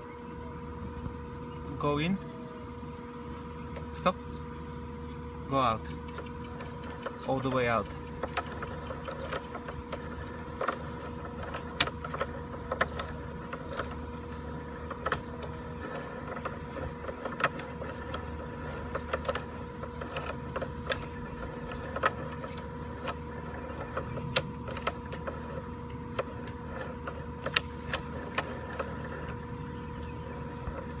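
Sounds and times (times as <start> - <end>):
steady electrical hum: 0.0 - 31.0
cable clicks and knocks: 5.8 - 31.0.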